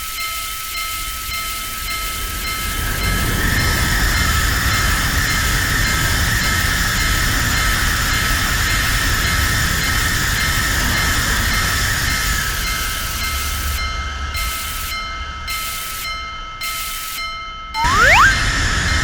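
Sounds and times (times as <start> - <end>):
train rumble and wheel hiss: 0.0 - 17.3
crossing alarm ringing: 17.8 - 18.4.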